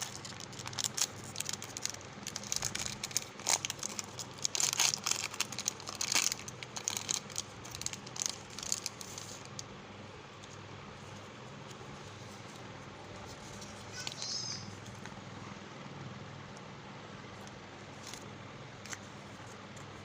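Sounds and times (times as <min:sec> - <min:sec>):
plastic wrappers crinkling: 0:00.0 - 0:09.7.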